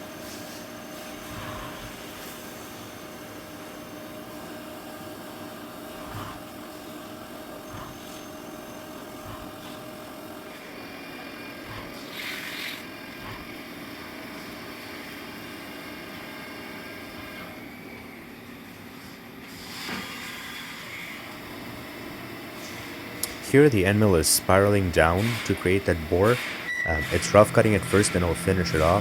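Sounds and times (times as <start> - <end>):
milling machine humming: 21.9 - 29.0.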